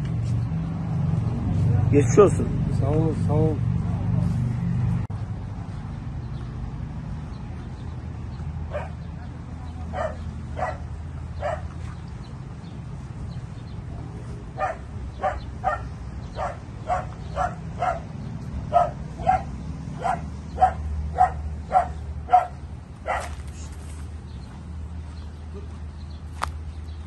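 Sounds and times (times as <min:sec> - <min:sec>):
dog barking: 0:08.7 - 0:09.0, 0:09.9 - 0:11.7, 0:14.6 - 0:23.4.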